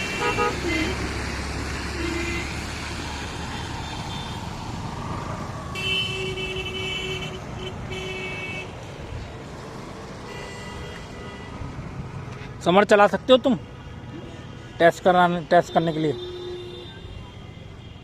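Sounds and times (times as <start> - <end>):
vehicle horn honking: 0.0 - 1.0, 2.0 - 2.5, 5.8 - 8.7, 15.6 - 18.0
road traffic rumble: 0.0 - 18.0.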